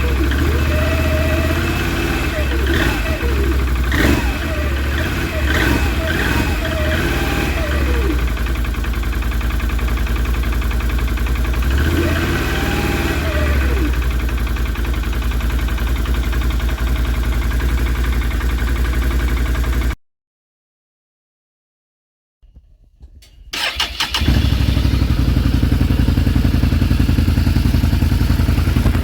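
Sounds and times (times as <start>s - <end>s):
engine running with rapid knock: 0.0s - 20.0s, 22.5s - 29.0s.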